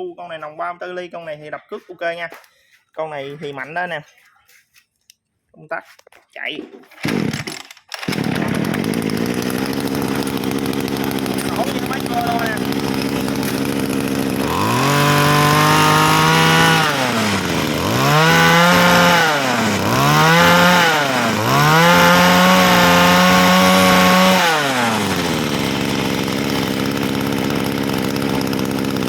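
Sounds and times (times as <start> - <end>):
brush cutter idling and revving: 7.0 - 29.0.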